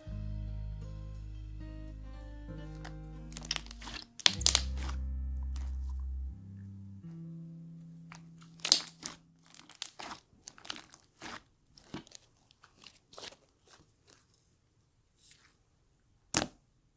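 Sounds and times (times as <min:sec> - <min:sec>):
slime crunching pops and clicks: 0:03.4 - 0:05.0, 0:08.6 - 0:12.0.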